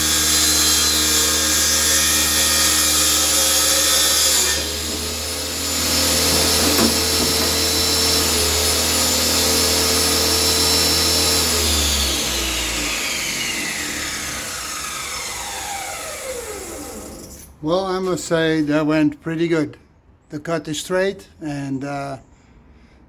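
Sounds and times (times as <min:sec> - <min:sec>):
circular saw winding down: 0:00.0 - 0:17.4.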